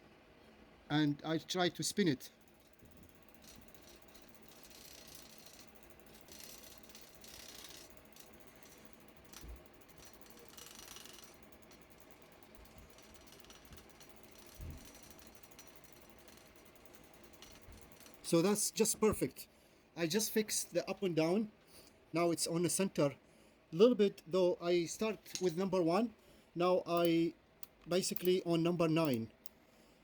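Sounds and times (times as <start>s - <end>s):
bicycle wheel and chain clicking: 2.3s - 19.0s.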